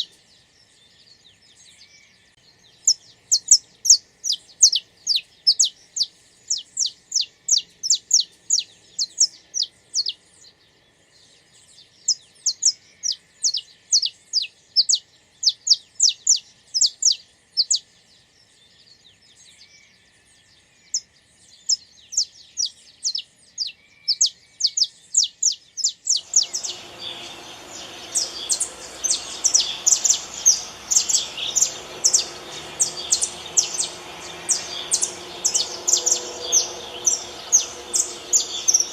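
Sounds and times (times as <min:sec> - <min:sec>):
finch chirping song: 0:00.0 - 0:38.9
steady background hiss: 0:26.2 - 0:38.9.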